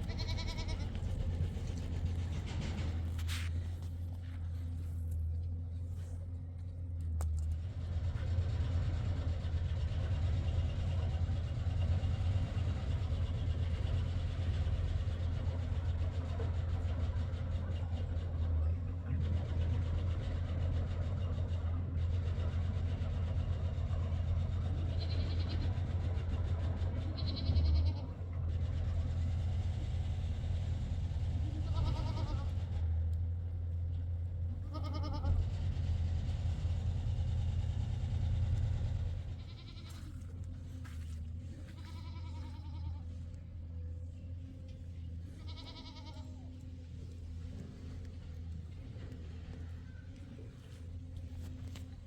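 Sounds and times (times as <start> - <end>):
goats bleating: 0.0 - 1.5, 24.9 - 25.7, 27.2 - 28.2, 31.6 - 32.6, 34.6 - 35.5, 39.3 - 40.4, 41.6 - 43.2, 45.2 - 46.5
low engine hum: 0.0 - 52.0.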